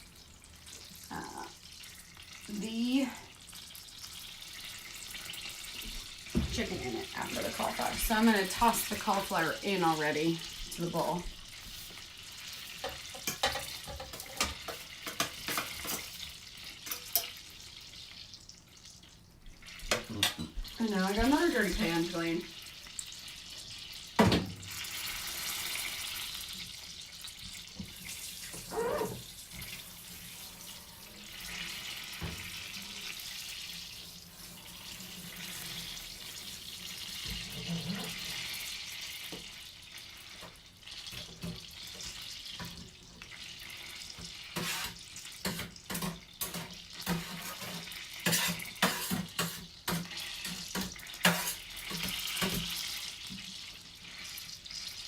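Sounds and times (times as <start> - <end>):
pan and dishes clattering: 12.6 - 17.4, 19.8 - 22.0, 37.1 - 38.5, 44.2 - 53.6.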